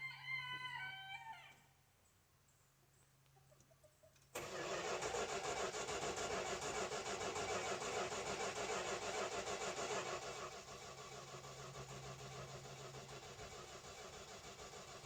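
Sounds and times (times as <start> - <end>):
car engine starting and running: 4.4 - 15.0.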